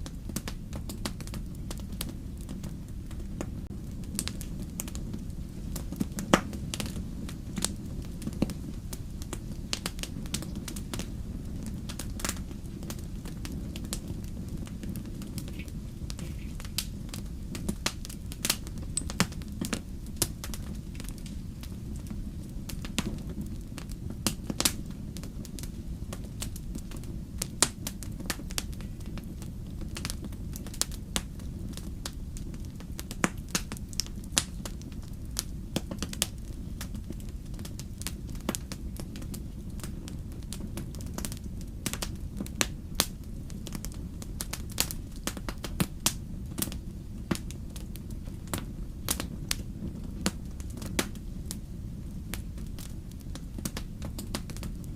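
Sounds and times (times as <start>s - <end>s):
wood fire crackling: 0.0s - 54.9s.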